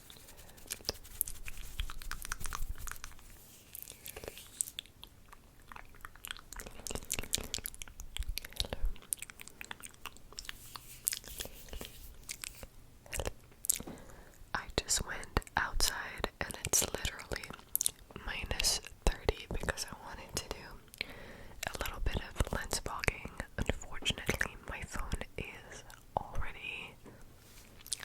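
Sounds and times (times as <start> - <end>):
wet mouth clicks and smacks: 4.1 - 11.3.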